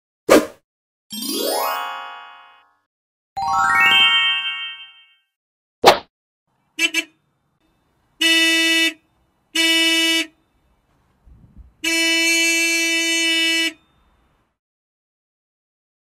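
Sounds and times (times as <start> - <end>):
horn honks: 6.7 - 7.2, 8.2 - 10.4, 11.8 - 14.1.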